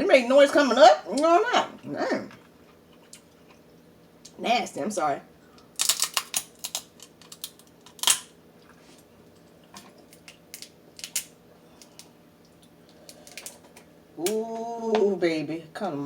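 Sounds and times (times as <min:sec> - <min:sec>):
crab shells cracking: 0:05.6 - 0:08.4, 0:10.0 - 0:14.4.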